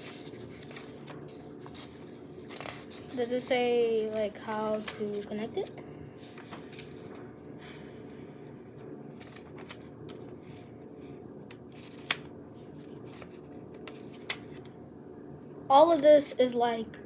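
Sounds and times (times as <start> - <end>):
paper rustling: 0.0 - 7.3, 8.7 - 10.8, 11.5 - 14.7
steady low hum: 0.0 - 17.0.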